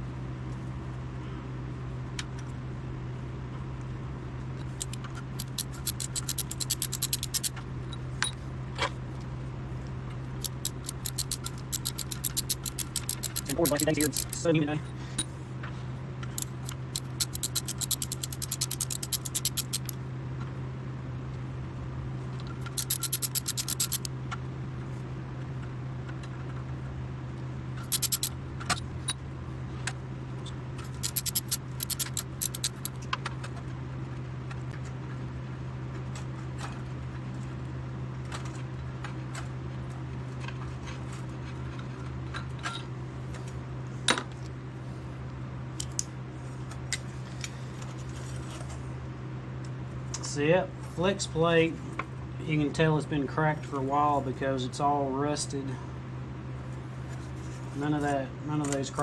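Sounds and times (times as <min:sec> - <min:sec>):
low hum: 0:04.3 - 0:20.1
metal clicks: 0:04.6 - 0:07.6, 0:10.4 - 0:14.5, 0:16.3 - 0:20.0, 0:22.6 - 0:24.1, 0:27.8 - 0:28.8, 0:30.8 - 0:33.0
ratchet wrench clicking: 0:04.7 - 0:07.6, 0:10.4 - 0:14.5, 0:16.3 - 0:20.0, 0:22.6 - 0:24.1, 0:27.8 - 0:28.3, 0:30.8 - 0:33.0.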